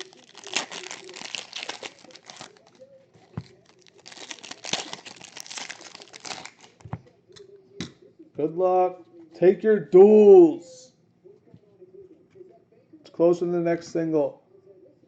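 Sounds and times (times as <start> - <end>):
wrappers tearing and crinkling: 0.0 - 6.9.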